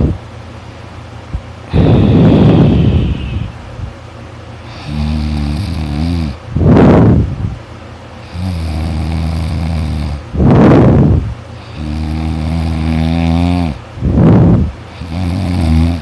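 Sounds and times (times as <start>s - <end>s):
low steady droning: 0.0s - 16.0s
person snoring loudly: 1.7s - 3.6s, 4.7s - 6.8s, 8.2s - 10.8s, 11.6s - 13.8s, 14.9s - 16.0s.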